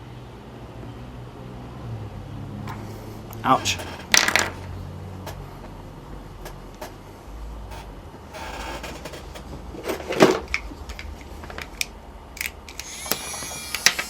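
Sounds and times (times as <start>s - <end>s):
short hiss: 12.8s - 14.0s.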